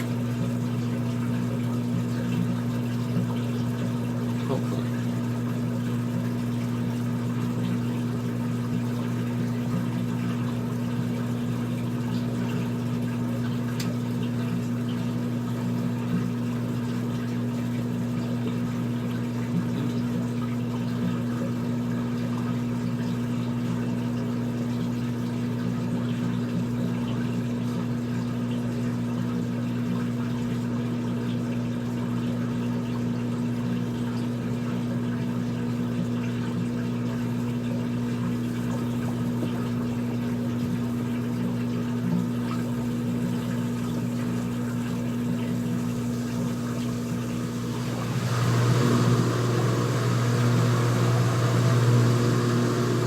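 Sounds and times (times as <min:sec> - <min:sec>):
washing machine drain pump humming: 0:00.0 - 0:53.0.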